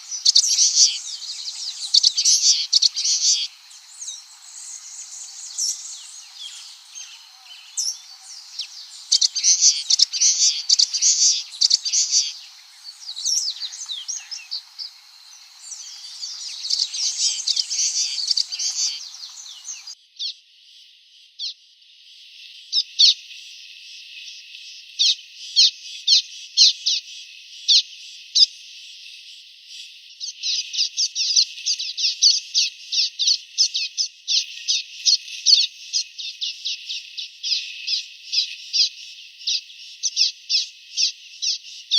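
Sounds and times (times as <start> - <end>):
birds chirping: 0.0 - 20.0.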